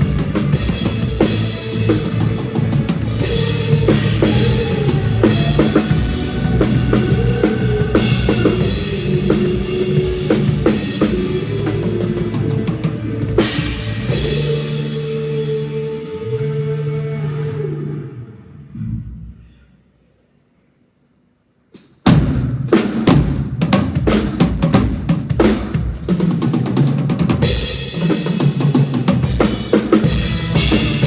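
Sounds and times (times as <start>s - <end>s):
drum kit playing: 0.0s - 15.9s, 21.8s - 31.0s
bass and held chords: 0.0s - 19.4s, 29.3s - 31.0s
cymbal crash: 29.3s - 31.0s.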